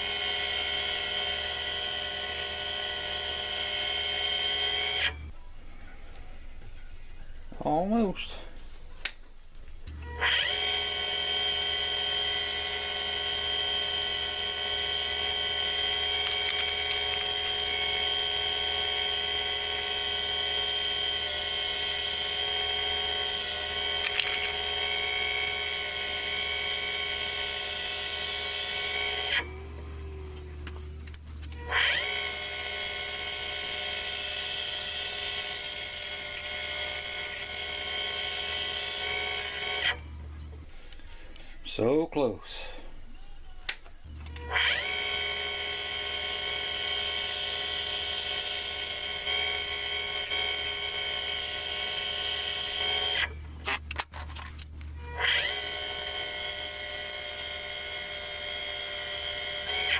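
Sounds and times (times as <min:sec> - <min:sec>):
lathe whining: 0:09.9 - 0:41.6, 0:44.2 - 0:53.4, 0:55.0 - 0:59.9.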